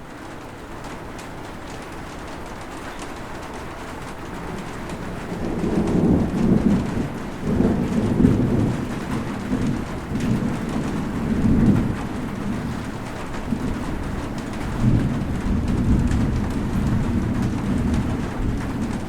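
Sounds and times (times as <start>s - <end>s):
steady rain: 0.0s - 19.0s
rolling thunder: 3.8s - 19.0s.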